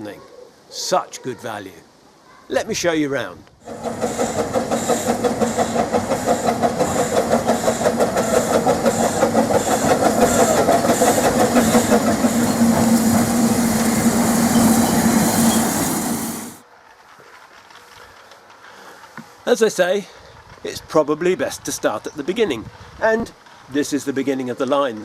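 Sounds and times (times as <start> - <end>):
steam locomotive chuffing and hissing: 3.6 - 16.6.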